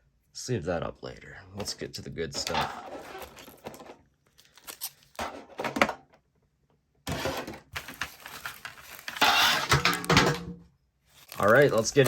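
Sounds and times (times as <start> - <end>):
packs rustling: 2.4 - 5.3, 7.1 - 10.4, 11.1 - 12.0.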